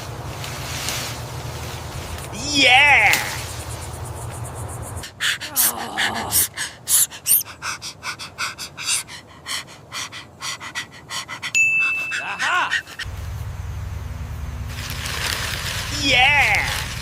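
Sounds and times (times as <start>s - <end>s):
cartoon character panting: 2.3s - 13.1s.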